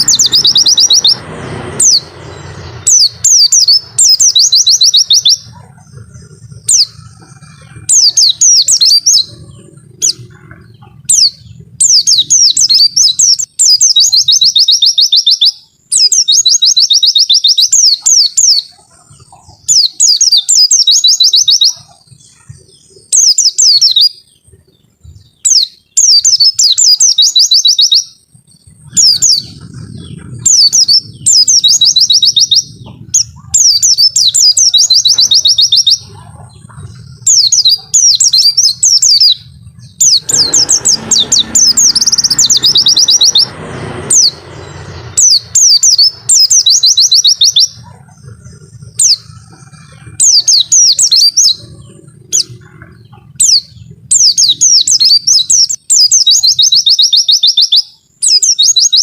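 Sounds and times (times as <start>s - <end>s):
bird singing high-pitched phrases: 0.0s - 59.0s.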